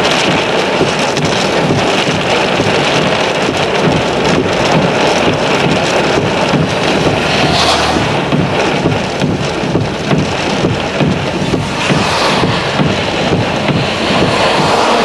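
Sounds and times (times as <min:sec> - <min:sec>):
wind gusts on microphone: 0:00.0 - 0:15.0.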